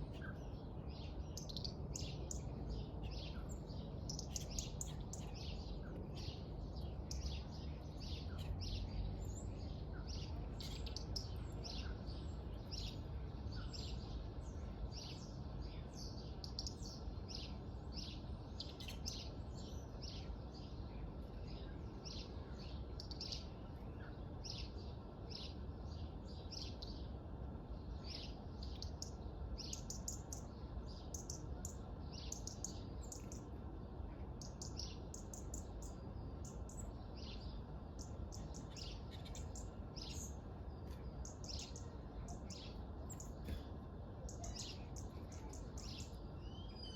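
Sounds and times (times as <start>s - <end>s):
small birds chirping: 0.0s - 46.9s.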